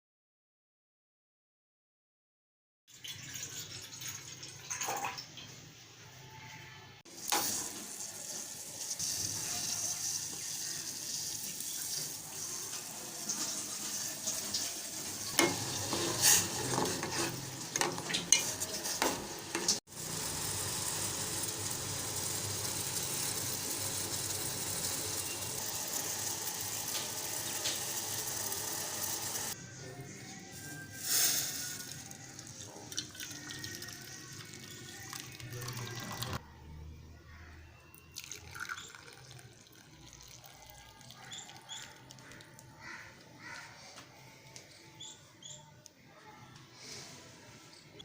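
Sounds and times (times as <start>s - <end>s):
pot of water hissing: 7.1s - 29.6s, 30.9s - 32.5s.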